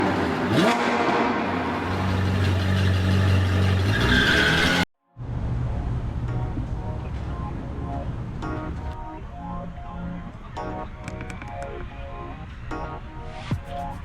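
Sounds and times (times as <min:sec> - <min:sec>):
car engine revving: 0:00.0 - 0:04.9
music: 0:05.1 - 0:14.0.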